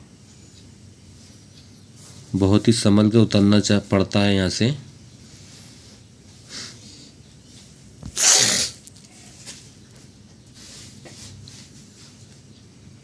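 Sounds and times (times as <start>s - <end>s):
loud sharp sneeze: 8.1s - 8.8s.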